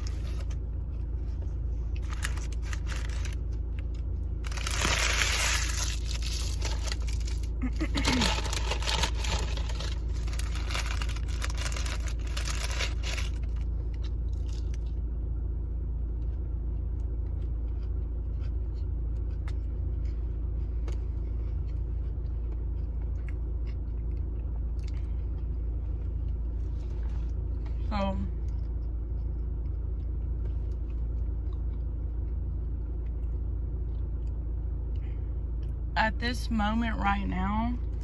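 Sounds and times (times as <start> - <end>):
car idling rumble: 0.0 - 38.0
paper packaging crinkling: 2.0 - 3.4, 4.4 - 13.7.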